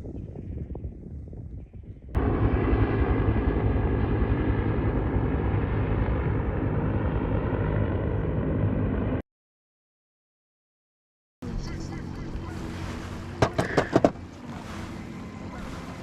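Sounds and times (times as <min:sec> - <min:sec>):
electric boat motor rumbling: 0:11.4 - 0:16.0
water rushing: 0:11.4 - 0:16.0.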